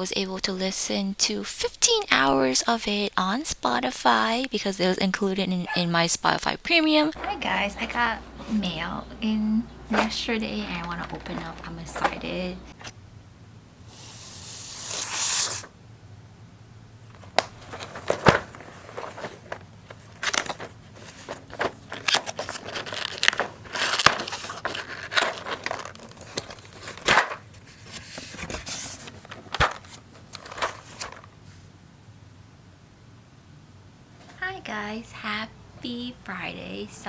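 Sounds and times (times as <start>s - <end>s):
packaging crinkling and rustling: 17.1s - 31.6s
package tearing open: 20.1s - 27.4s.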